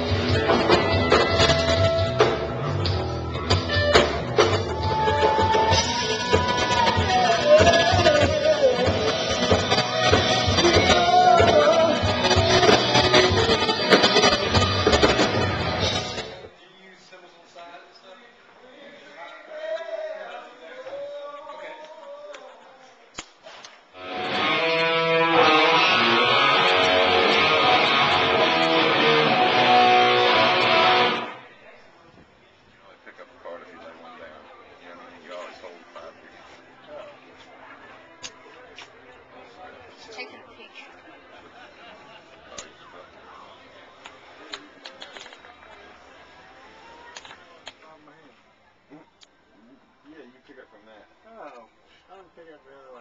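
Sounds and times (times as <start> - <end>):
bass guitar: 0.0 - 16.5, 24.0 - 31.4
electric guitar: 0.0 - 16.5, 24.0 - 31.4
drums: 0.0 - 16.6, 23.2 - 31.4.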